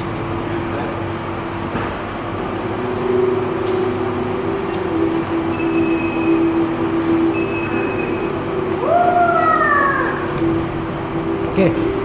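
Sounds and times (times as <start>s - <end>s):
large vehicle engine running: 0.0s - 7.4s.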